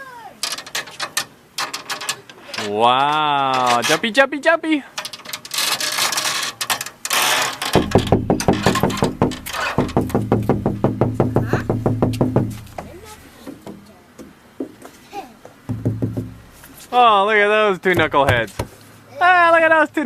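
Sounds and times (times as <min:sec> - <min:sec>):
thumping on playground equipment: 0:05.0 - 0:14.9, 0:15.7 - 0:16.8, 0:18.0 - 0:18.8.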